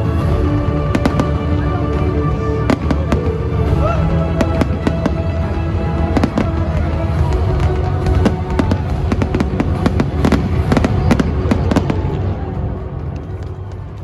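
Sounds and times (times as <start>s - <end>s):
firework bangs and cracks: 4.4s - 13.6s.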